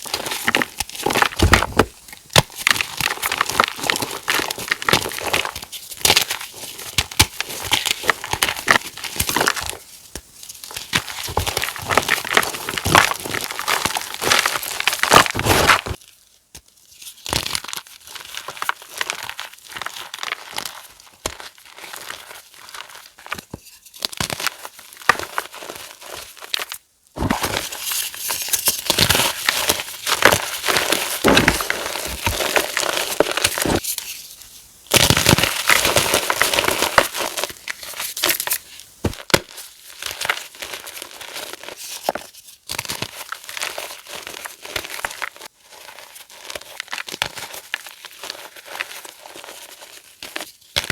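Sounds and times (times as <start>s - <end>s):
chalk being crushed: 0.0s - 16.0s, 27.2s - 34.3s.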